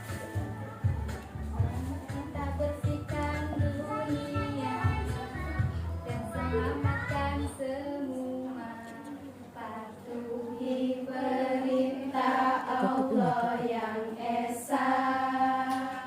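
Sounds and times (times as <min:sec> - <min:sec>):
backing track with low beat: 0:00.0 - 0:07.4
children singing together: 0:03.0 - 0:16.0.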